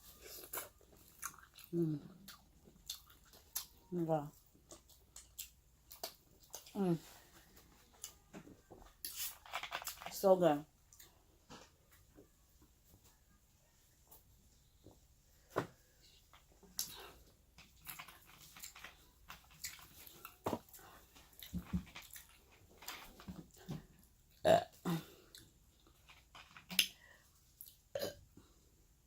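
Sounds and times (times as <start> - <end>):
wet chewing and smacking: 0.2 - 6.8, 16.7 - 23.6
person burping: 24.4 - 25.2, 27.9 - 28.2.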